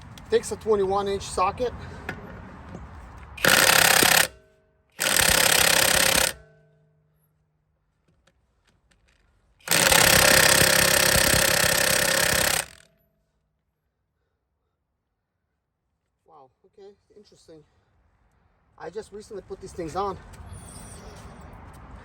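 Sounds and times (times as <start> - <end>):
impact wrench hammering: 3.4 - 4.4, 5.0 - 6.9, 9.6 - 12.9.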